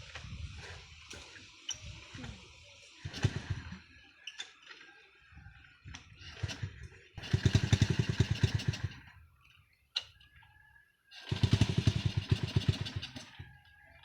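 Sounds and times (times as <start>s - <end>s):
motorcycle engine kick-start putts: 3.1s - 3.8s, 6.4s - 9.1s, 11.2s - 13.6s.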